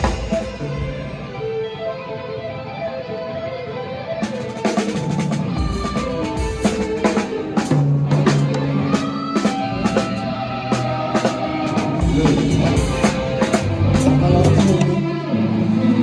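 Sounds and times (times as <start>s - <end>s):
drum kit with cymbals: 0.0s - 1.5s, 4.2s - 15.2s
rock band playing: 0.0s - 16.0s
low bass line: 12.0s - 16.0s.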